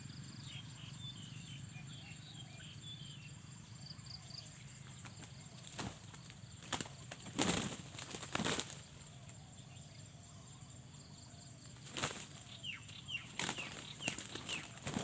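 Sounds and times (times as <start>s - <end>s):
bird wings flapping: 5.0s - 9.1s, 11.7s - 12.6s, 13.2s - 15.0s.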